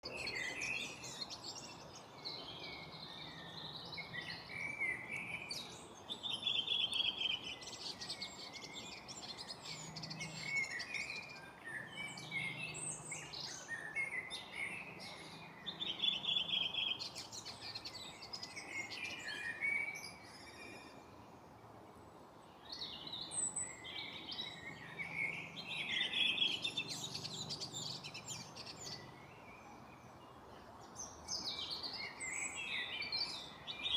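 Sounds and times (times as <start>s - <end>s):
faint steady background noise: 0.0s - 33.9s
songbirds singing: 0.0s - 33.9s.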